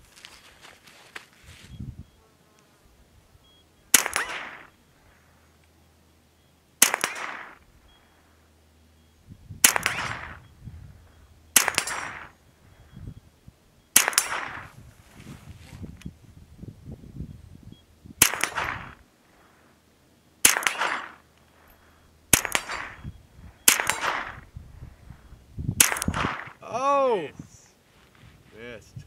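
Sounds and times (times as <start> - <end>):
rifle shots with echo: 3.9 - 4.8, 6.8 - 7.6, 9.6 - 10.5, 11.5 - 12.4, 13.9 - 14.7, 18.2 - 19.0, 20.4 - 21.3, 22.3 - 24.5, 25.8 - 26.6.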